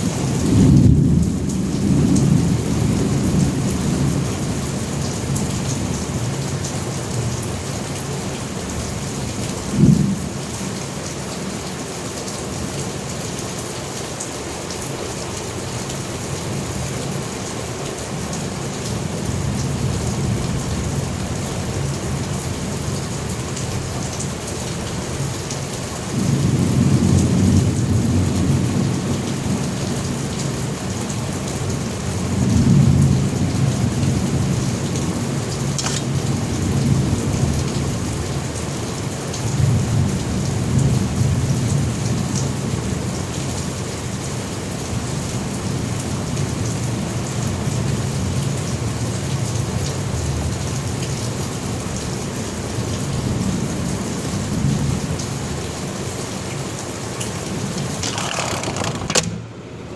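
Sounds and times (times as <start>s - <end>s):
heavy rain: 0.0s - 59.9s.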